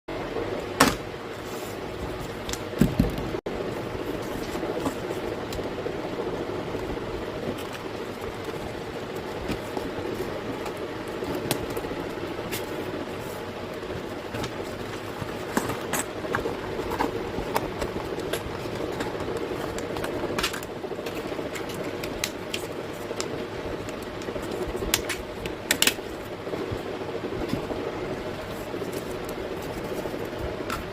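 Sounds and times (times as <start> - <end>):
fan hum: 0.1 - 30.9
packaging rustling and clicks: 7.4 - 27.7.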